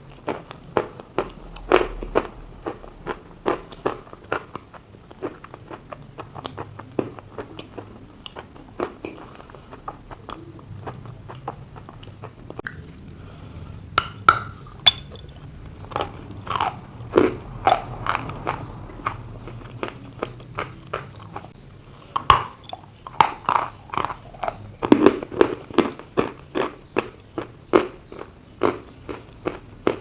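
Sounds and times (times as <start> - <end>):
crunching and chewing chalk: 0.0 - 30.0.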